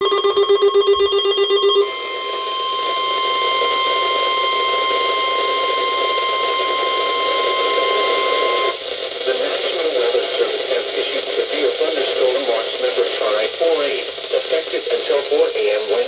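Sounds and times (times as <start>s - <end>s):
buzzy digital header tones: 0.0s - 8.8s
steady warning alarm tone: 0.0s - 10.5s
radio hiss: 2.0s - 16.0s.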